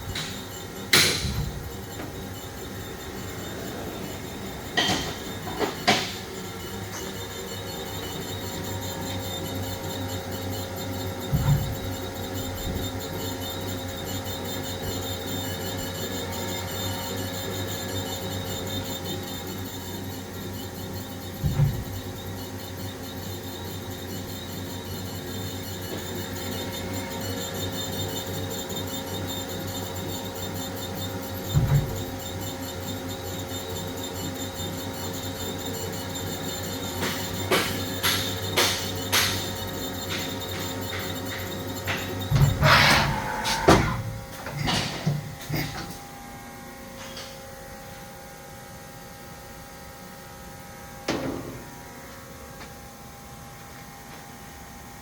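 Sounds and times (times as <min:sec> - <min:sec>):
lathe machine hum: 0:00.0 - 0:44.7.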